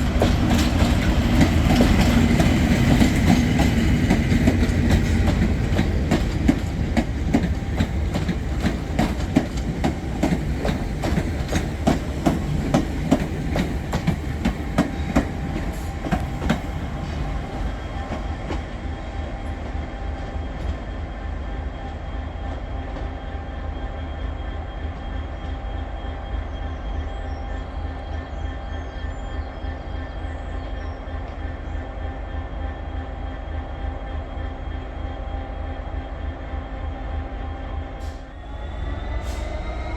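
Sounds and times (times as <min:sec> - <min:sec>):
train wheels clicking over rail joints: 0:00.0 - 0:20.9
train rumble: 0:00.0 - 0:39.9.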